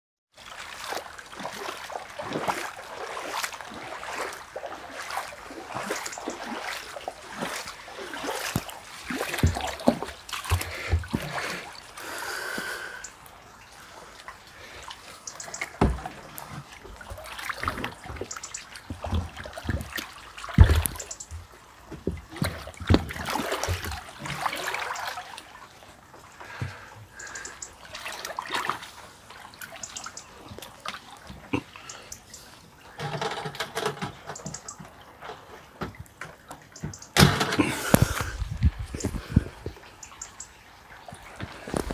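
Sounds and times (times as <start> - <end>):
floodwater splashing: 0.3 - 41.9
deep thumps: 20.6 - 21.0.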